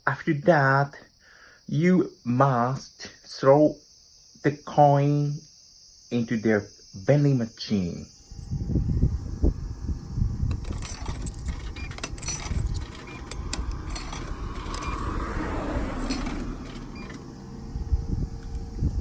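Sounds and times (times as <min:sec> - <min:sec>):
low rumble: 0:08.3 - 0:19.0
coins clinking into a coin slot: 0:10.5 - 0:15.1, 0:16.0 - 0:17.2.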